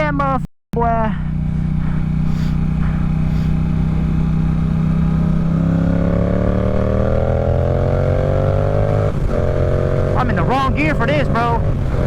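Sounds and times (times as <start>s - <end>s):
road rumble: 0.0s - 12.0s
motorcycle engine revving: 0.8s - 12.0s
wind rush: 9.0s - 12.0s.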